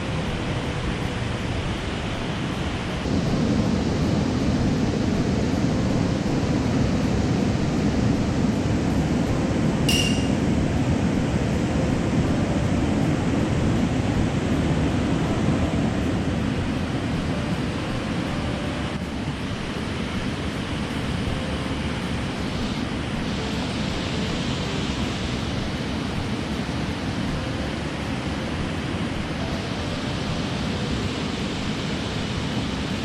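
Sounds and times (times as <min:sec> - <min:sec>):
short high-pitched clink: 0:09.9 - 0:10.5.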